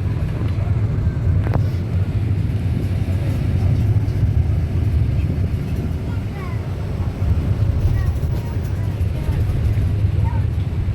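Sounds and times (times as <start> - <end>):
boat engine low rumble: 0.0 - 10.9.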